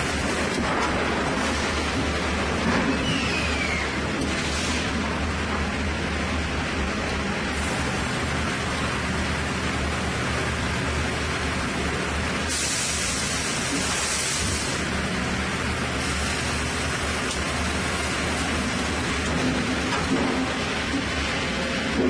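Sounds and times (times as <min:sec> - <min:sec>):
sawmill machinery running: 0:00.0 - 0:22.0
loud high hiss: 0:12.3 - 0:19.1.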